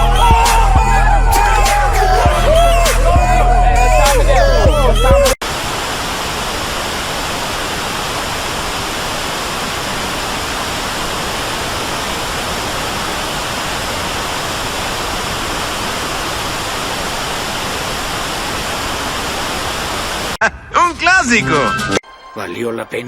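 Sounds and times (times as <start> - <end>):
steady hiss of noise: 5.4 - 20.4.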